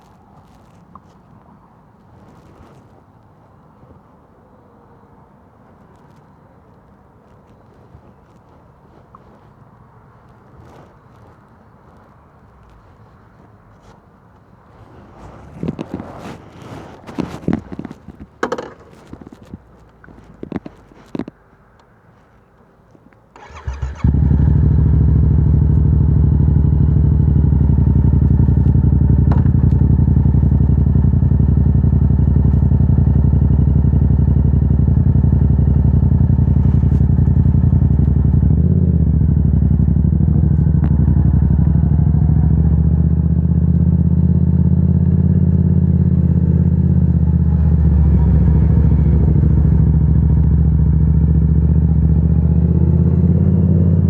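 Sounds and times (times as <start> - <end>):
motorcycle engine starting and idling: 23.3 - 54.0.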